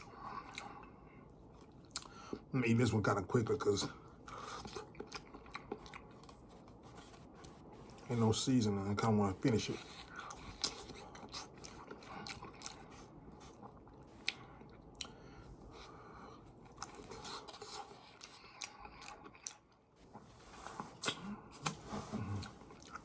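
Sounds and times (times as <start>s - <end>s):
person chewing food: 0.0s - 2.5s, 3.9s - 8.1s, 9.5s - 23.0s
wet mouth clicks: 20.9s - 21.8s.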